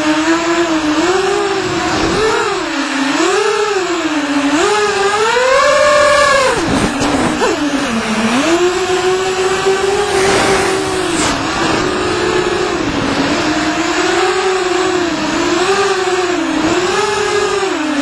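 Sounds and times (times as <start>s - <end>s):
drone motors whining: 0.0s - 18.0s
rushing air noise: 6.6s - 13.6s.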